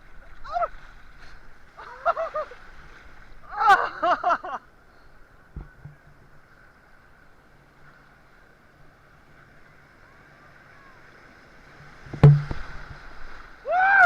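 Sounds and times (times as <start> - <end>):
water sloshing: 11.6 - 13.6
sharp knocks: 12.1 - 13.0.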